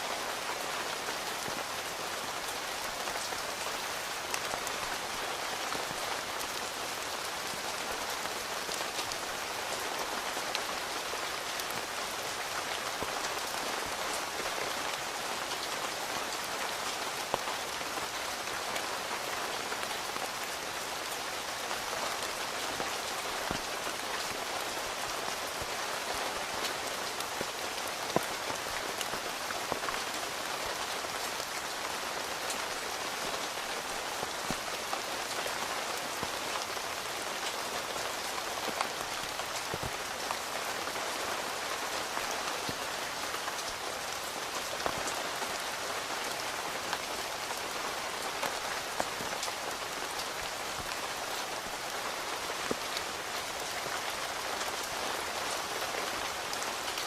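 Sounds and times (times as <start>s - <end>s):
rain pattering on a tent: 0.0s - 57.0s.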